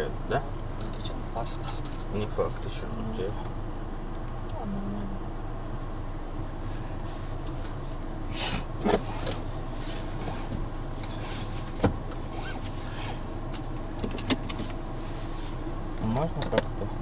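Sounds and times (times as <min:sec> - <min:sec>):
low hum inside car cabin: 0:00.0 - 0:17.0
sharp clicks and knocks: 0:14.0 - 0:14.8, 0:16.4 - 0:16.8.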